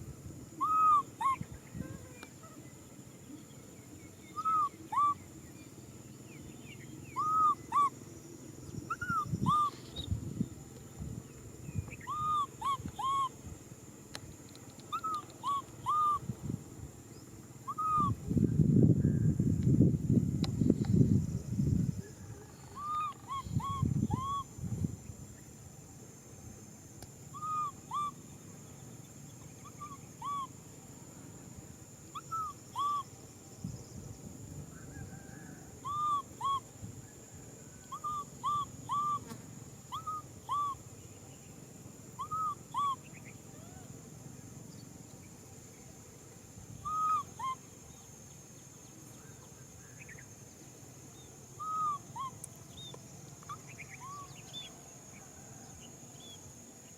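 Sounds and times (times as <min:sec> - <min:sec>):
baby macaque cooing cries: 0:00.6 - 0:02.6, 0:08.9 - 0:09.7, 0:12.0 - 0:13.3, 0:14.9 - 0:16.2, 0:17.7 - 0:18.1, 0:22.8 - 0:24.4, 0:27.4 - 0:28.2, 0:29.8 - 0:30.5, 0:32.2 - 0:33.0, 0:35.8 - 0:36.6, 0:37.9 - 0:39.2, 0:39.9 - 0:40.8, 0:42.2 - 0:43.0, 0:46.9 - 0:47.6, 0:51.6 - 0:52.3.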